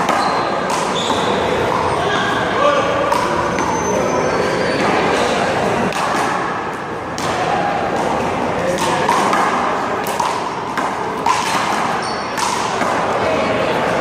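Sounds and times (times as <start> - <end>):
voices: 0.0 - 14.0
hand slapping ball: 8.7 - 13.0.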